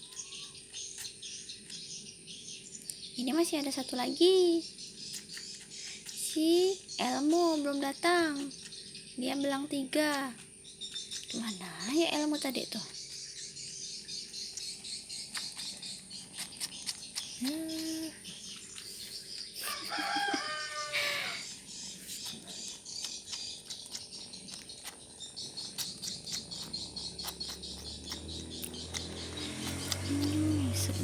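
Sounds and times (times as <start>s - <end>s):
rooster crowing: 19.6s - 21.6s.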